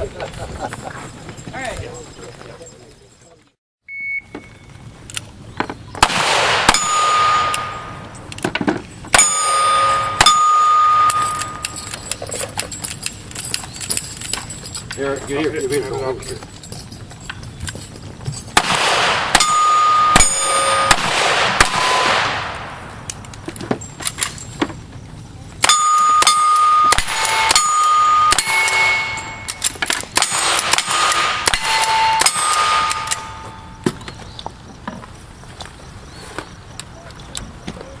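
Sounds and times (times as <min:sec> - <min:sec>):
rapid gunshots: 0:06.0 - 0:07.5, 0:18.6 - 0:22.8, 0:30.2 - 0:32.8
steel plate ringing ding: 0:06.7 - 0:08.1, 0:09.1 - 0:11.8, 0:19.4 - 0:21.0, 0:25.6 - 0:29.6, 0:31.5 - 0:33.8.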